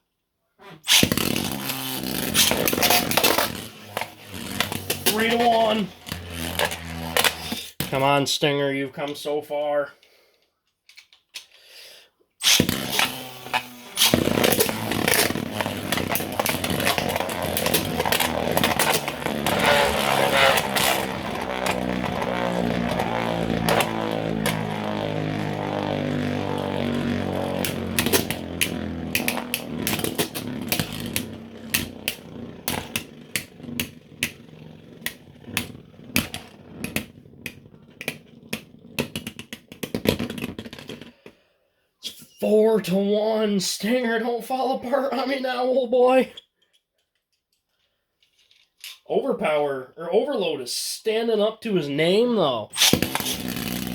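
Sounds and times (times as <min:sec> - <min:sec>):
spinning tops whirring: 0:00.8 - 0:08.0, 0:12.4 - 0:41.0, 0:52.8 - 0:53.9.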